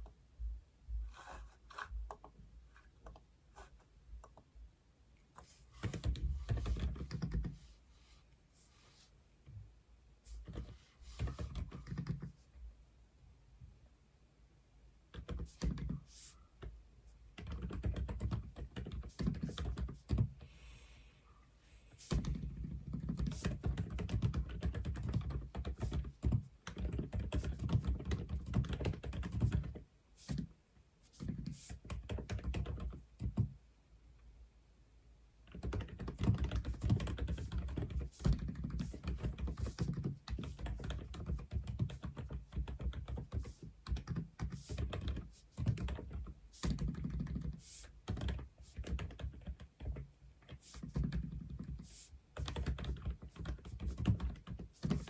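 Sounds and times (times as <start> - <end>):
mechanical keyboard typing: 5.8 - 7.6, 10.5 - 12.3, 17.4 - 20.3, 22.1 - 29.8, 31.2 - 33.5, 35.5 - 51.8, 52.4 - 55.0.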